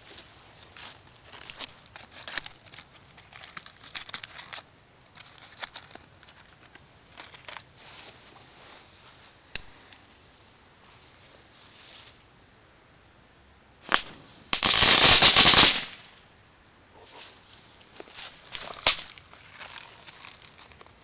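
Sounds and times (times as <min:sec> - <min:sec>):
fireworks crackling and popping: 0:13.8 - 0:16.2, 0:18.2 - 0:21.0
loud firework crack: 0:13.8 - 0:16.2, 0:18.6 - 0:19.1.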